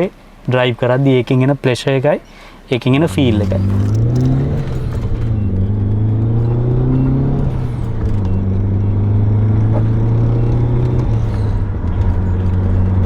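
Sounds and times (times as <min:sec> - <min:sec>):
car engine accelerating: 0:02.8 - 0:13.0.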